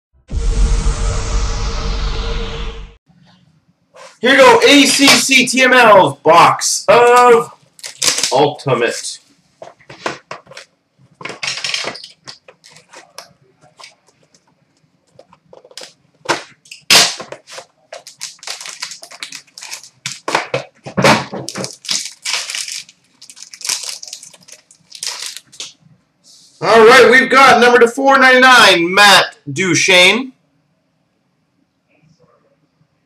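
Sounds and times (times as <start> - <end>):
packaging crinkling and tearing: 7.7 - 8.5, 9.9 - 14.5, 15.1 - 25.8.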